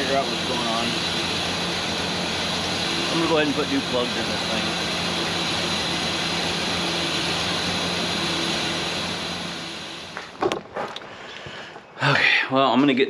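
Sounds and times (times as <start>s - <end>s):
engine idling with misfire: 0.0s - 10.4s.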